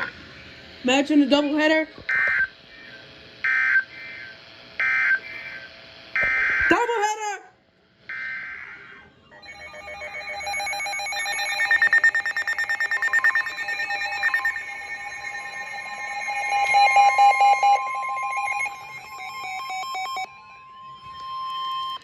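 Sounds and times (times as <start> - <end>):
steady high warning tone: 0.0 - 7.2, 8.1 - 22.0
warbling electronic alarm tones: 0.9 - 6.8, 8.1 - 22.0.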